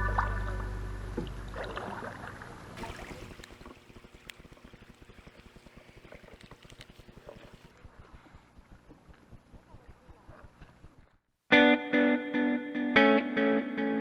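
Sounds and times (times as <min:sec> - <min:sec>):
kayak paddling on water: 0:01.2 - 0:11.1
small ticks: 0:03.2 - 0:07.8.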